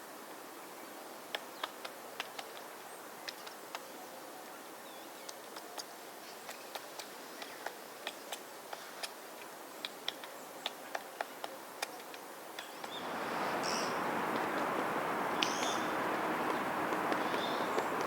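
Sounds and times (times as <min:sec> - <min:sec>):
woodpecker tapping on wood: 0:12.1 - 0:18.0
short high bird calls: 0:12.8 - 0:18.0
steady rushing noise: 0:12.8 - 0:18.0.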